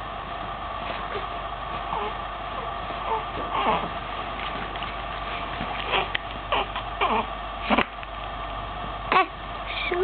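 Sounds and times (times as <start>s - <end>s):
steady background hum: 0.0s - 10.0s
newborn baby squeaky grunts: 5.9s - 7.3s.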